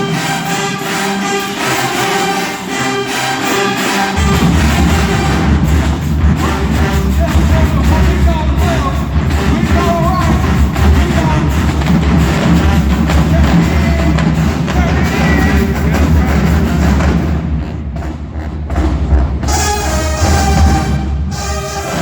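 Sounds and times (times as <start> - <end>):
brass held chord: 0.0 - 11.7, 19.4 - 22.0
drumline and bass drums: 0.0 - 22.0
marching band playing: 0.0 - 22.0.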